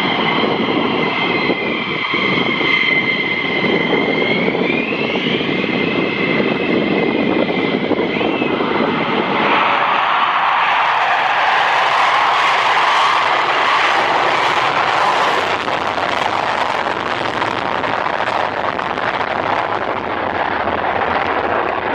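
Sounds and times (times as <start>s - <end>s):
high whining engine tones: 0.0s - 21.9s
jet engines running: 0.0s - 21.9s.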